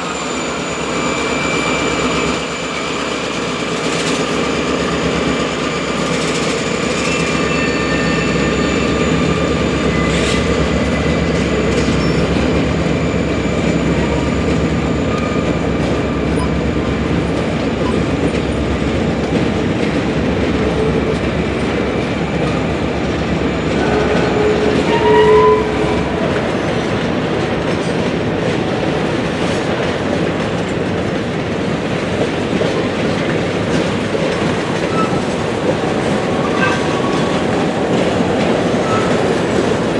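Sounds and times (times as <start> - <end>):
railroad cars rumbling: 0.0 - 39.9
train wheels clicking over rail joints: 26.2 - 39.9.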